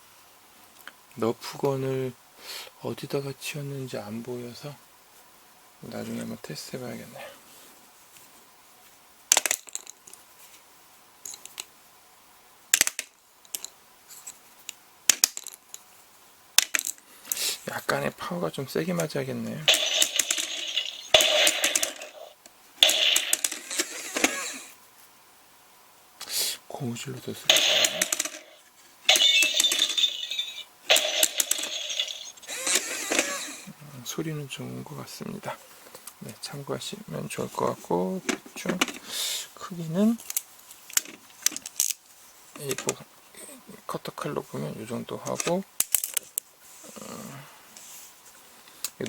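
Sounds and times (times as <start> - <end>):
plastic target plates clacking: 19.7 - 24.4, 27.5 - 33.4
ringing electronic sound effect: 29.1 - 31.4.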